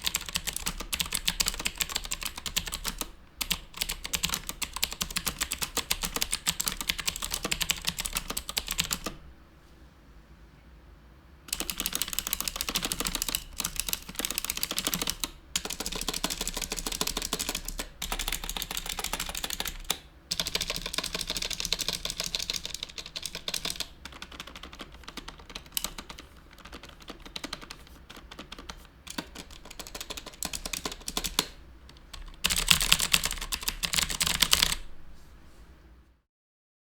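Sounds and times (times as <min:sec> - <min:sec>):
mechanical keyboard typing: 0:00.0 - 0:09.2, 0:11.5 - 0:34.9.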